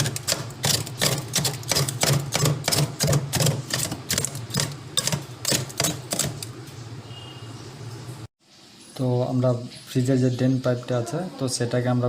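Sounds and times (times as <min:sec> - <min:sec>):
tool chipping at ice: 0:00.0 - 0:06.4.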